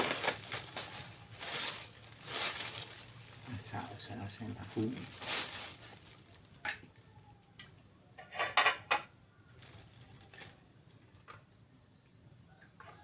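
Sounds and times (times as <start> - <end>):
dishes clattering: 7.6 - 9.1.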